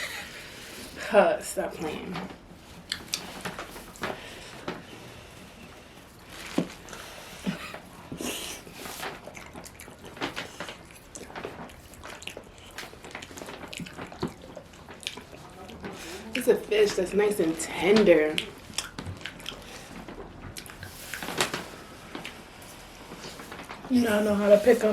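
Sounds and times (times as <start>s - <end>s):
wet chewing and lip-smacking: 2.8s - 4.8s, 7.7s - 17.0s, 18.3s - 21.2s.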